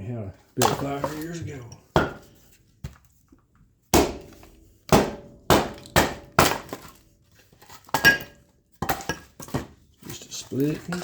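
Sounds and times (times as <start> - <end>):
axe chopping wood: 0.6 - 1.4, 2.0 - 2.3, 3.9 - 7.0.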